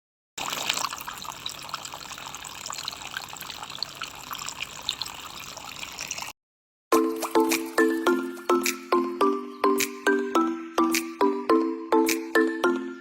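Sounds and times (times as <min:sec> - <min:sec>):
water trickling and splashing: 0:00.4 - 0:06.4, 0:07.0 - 0:08.7.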